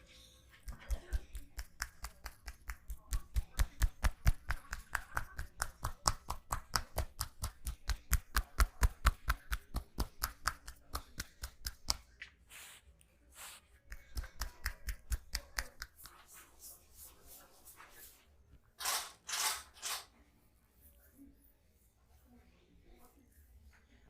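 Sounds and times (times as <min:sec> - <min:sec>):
hands slapping in percussive massage: 0:00.6 - 0:12.3, 0:13.9 - 0:16.7.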